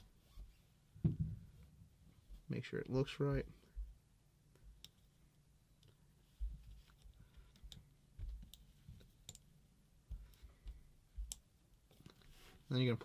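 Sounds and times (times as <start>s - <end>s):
small clicks and soft knocks: 5.8s - 9.5s.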